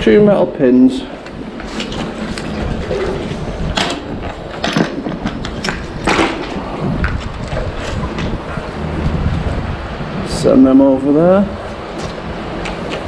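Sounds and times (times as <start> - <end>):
handling noise scraping and clicking: 1.2 - 9.2
rustling: 1.2 - 9.5.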